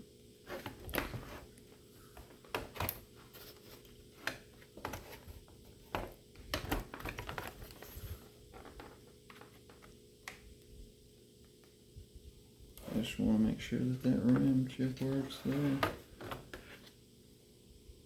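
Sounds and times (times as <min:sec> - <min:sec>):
faint steady hum: 0:00.0 - 0:18.0
laptop handling clicks and rustles: 0:00.5 - 0:10.5.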